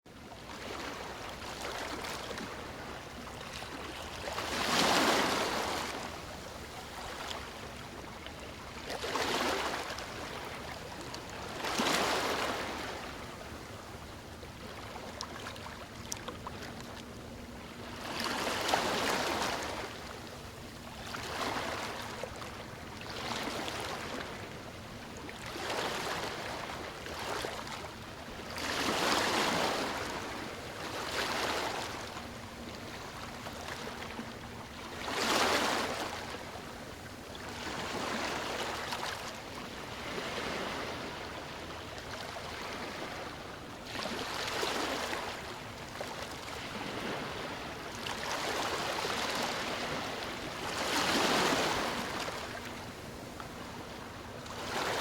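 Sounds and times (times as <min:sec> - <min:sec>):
sea waves washing in: 0:34.9 - 0:45.5, 0:46.5 - 0:55.0.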